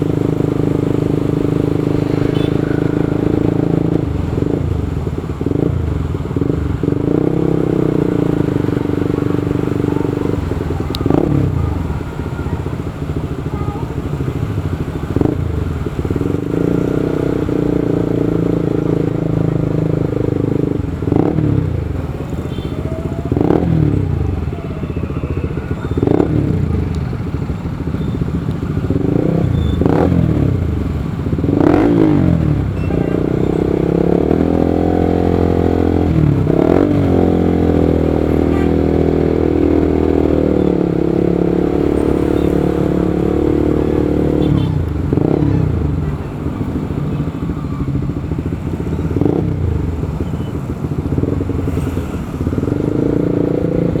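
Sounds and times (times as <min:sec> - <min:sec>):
motorcycle engine revving: 0:00.0 - 0:54.0.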